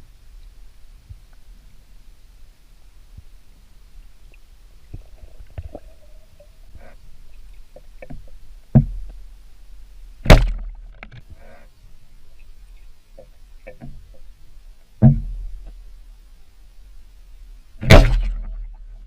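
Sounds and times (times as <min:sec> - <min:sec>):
loud thuds with low rumble: 0:08.7 - 0:09.4, 0:10.2 - 0:11.0, 0:15.0 - 0:15.8, 0:17.8 - 0:18.8
small clicks and knocks: 0:10.3 - 0:11.4.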